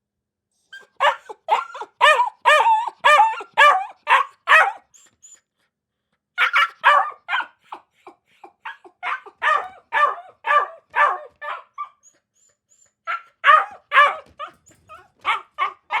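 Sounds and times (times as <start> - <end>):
dog yipping: 0.7 - 5.4, 6.4 - 16.0
dog barking: 0.8 - 4.9, 6.4 - 7.9, 8.6 - 12.0, 13.1 - 16.0.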